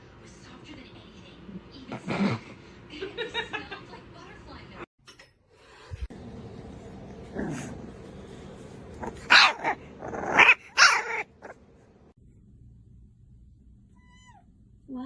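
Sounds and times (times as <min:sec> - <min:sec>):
dog barking: 0:09.0 - 0:11.6.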